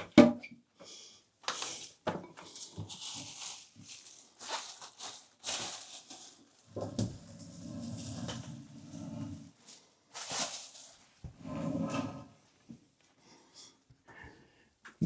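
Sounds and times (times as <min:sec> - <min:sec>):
rustling and scuffing handling: 0:02.5 - 0:06.4, 0:09.7 - 0:11.2.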